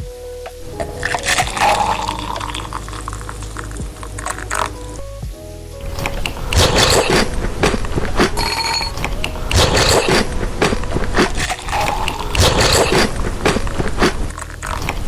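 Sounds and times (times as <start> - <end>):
crunchy chewing of food: 6.0 - 15.0.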